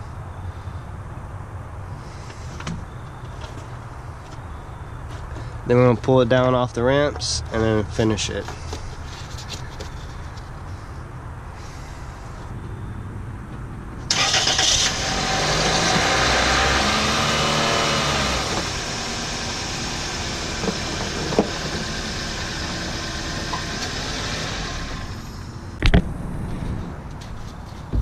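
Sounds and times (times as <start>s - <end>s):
car engine starting and idling: 14.0s - 26.0s.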